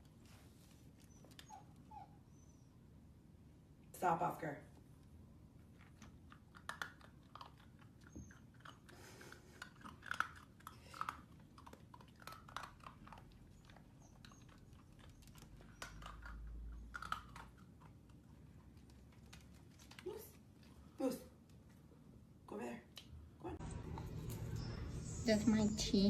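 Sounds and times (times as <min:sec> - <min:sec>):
dog chewing food: 0:05.6 - 0:20.8.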